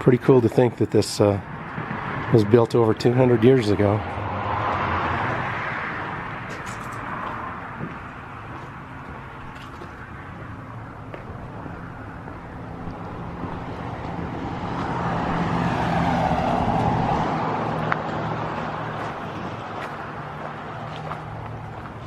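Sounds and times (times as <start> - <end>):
vehicle passing: 1.4 - 22.0.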